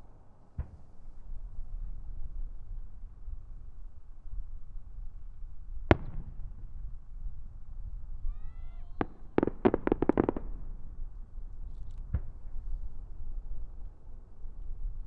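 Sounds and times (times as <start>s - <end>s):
firework bangs: 5.9s - 7.0s, 8.1s - 11.2s
rapid firework shell bursts: 9.0s - 10.7s.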